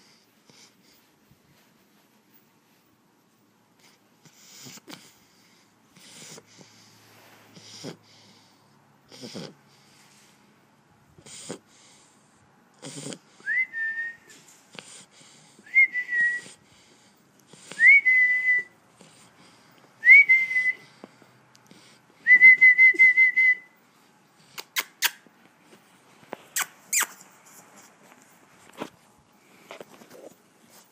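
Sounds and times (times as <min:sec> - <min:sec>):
dog snoring with whistle: 0:07.5 - 0:08.4, 0:09.1 - 0:09.6, 0:12.8 - 0:13.5.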